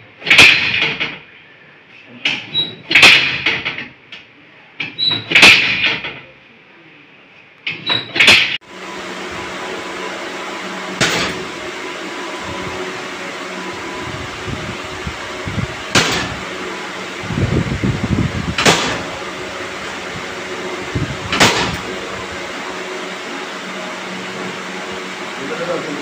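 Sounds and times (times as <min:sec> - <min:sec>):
steady machine hum: 0:08.6 - 0:26.0
machine knocks: 0:09.9 - 0:22.7.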